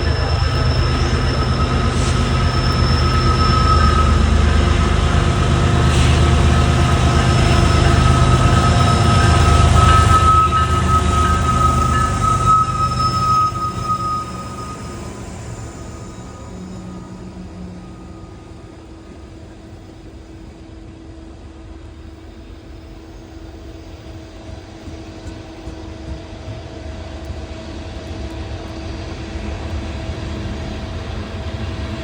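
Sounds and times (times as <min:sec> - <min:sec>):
steady whine: 0:00.0 - 0:21.0
diesel locomotive rumble: 0:00.0 - 0:32.0.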